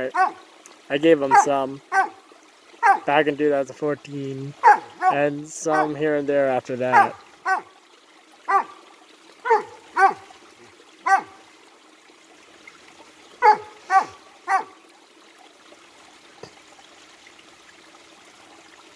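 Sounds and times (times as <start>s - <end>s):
stream rushing: 0.0s - 16.4s
dog barking: 0.1s - 0.4s, 1.3s - 2.2s, 2.8s - 3.1s, 4.6s - 6.0s, 6.9s - 7.7s, 8.5s - 8.8s, 9.5s - 10.3s, 11.1s - 11.4s, 13.4s - 14.8s.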